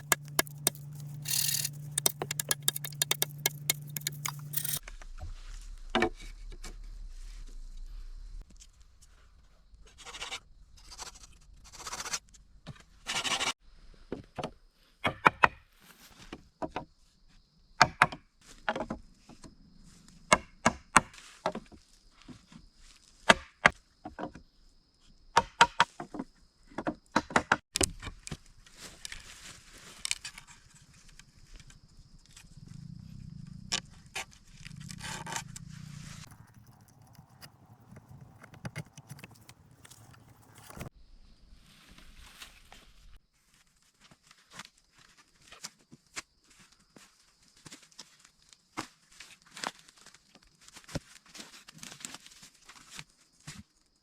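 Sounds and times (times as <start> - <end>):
bamboo scraping: 0.0 - 4.8, 34.2 - 40.9
sharp wooden knocks: 0.0 - 4.8.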